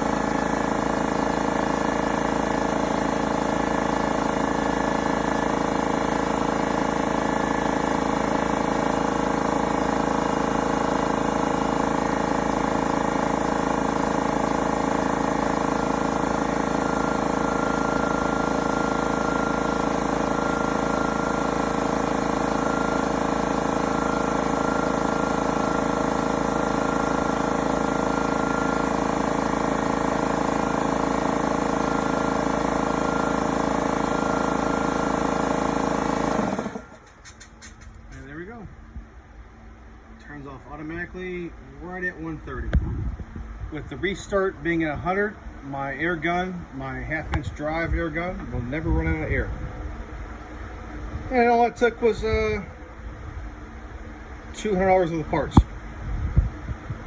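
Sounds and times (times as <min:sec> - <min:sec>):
electric air compressor running: 0:00.0 - 0:38.6.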